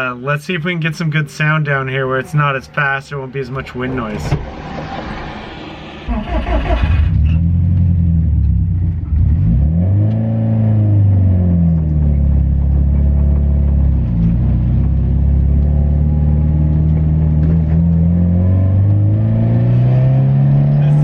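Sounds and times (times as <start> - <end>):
car engine revving hard: 9.1 - 11.6, 17.6 - 21.0.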